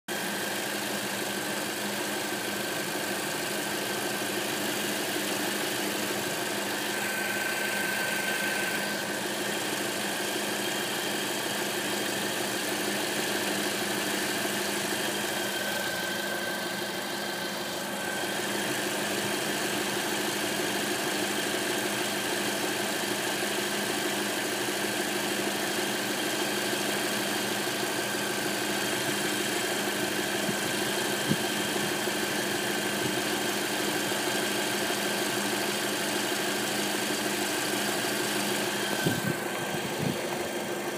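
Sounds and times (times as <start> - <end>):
car engine idling: 0.2 - 40.9.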